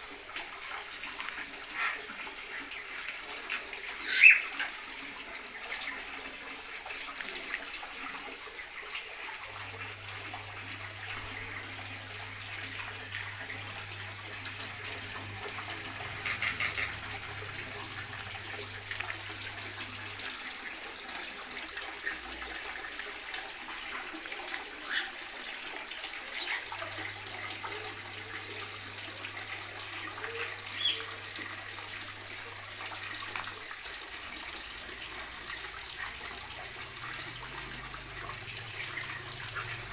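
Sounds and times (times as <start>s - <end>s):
birds chirping: 3.9s - 4.7s, 14.8s - 18.2s, 30.2s - 31.2s.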